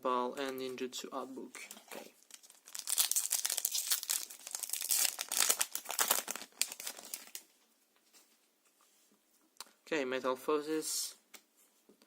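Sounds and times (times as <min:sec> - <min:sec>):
foil wrapper crinkling: 0:02.0 - 0:07.4.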